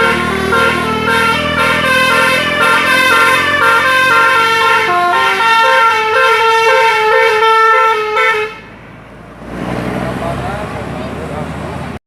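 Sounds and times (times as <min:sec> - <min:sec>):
bus musical air horn melody: 0:00.0 - 0:08.8.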